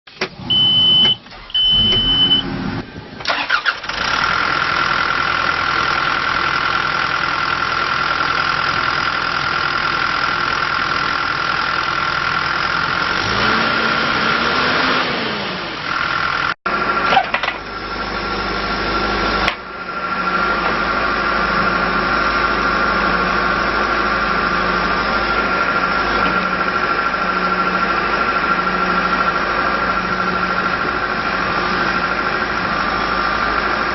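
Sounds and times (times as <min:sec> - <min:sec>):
diesel engine starting and running: 0:00.1 - 0:33.9
short high beeps: 0:00.5 - 0:02.5.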